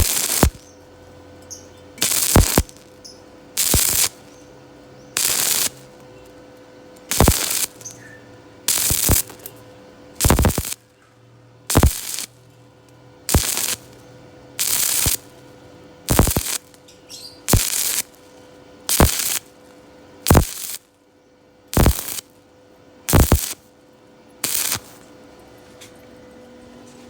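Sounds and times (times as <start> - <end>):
welding arc crackling: 0.0 - 0.8, 1.4 - 4.5, 5.1 - 6.1, 7.0 - 8.0, 8.6 - 9.6, 10.2 - 10.8, 11.7 - 12.4, 13.3 - 21.0, 21.7 - 22.4, 23.1 - 23.7, 24.4 - 25.1
faint steady hum: 0.0 - 27.0.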